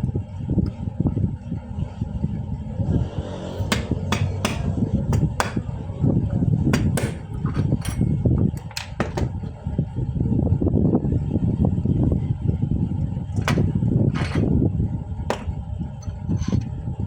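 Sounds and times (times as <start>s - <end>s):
steady low rumble: 0.0s - 17.0s
metal taps and clicks: 3.7s - 5.6s, 6.8s - 9.4s.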